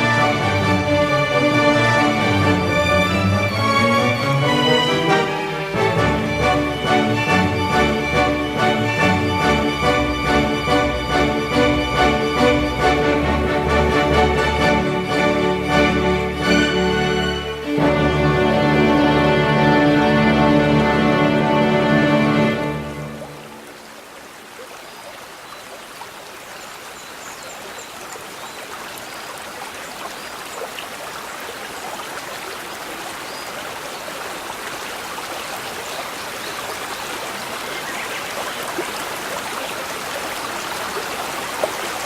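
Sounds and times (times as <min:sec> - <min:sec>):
brook babbling over stones: 0:22.7 - 0:42.0.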